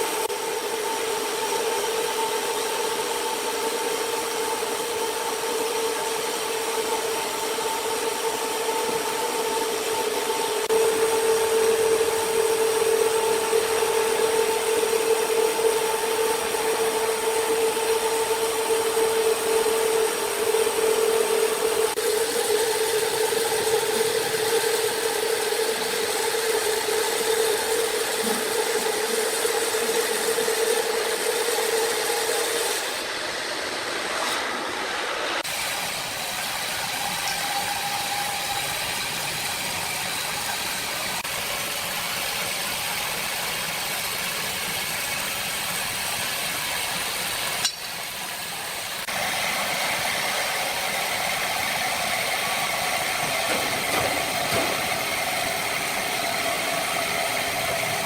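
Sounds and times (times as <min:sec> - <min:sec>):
sawmill machinery hum: 0:00.0 - 0:58.0
rattling machinery noise: 0:50.1 - 0:58.0.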